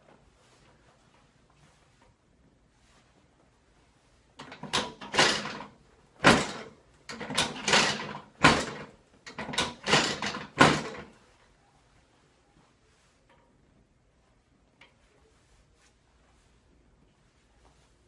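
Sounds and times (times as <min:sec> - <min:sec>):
adjusting table clacking and thumping: 0:04.4 - 0:11.1.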